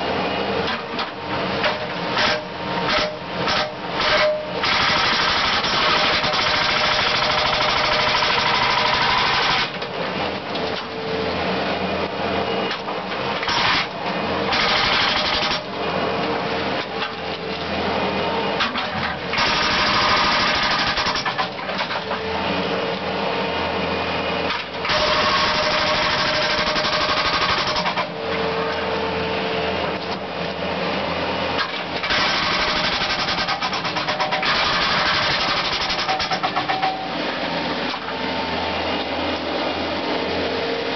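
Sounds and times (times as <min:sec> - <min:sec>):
jackhammer breaking concrete: 0:01.6 - 0:09.8, 0:13.4 - 0:15.7, 0:19.3 - 0:22.0, 0:24.8 - 0:28.2, 0:32.0 - 0:37.0.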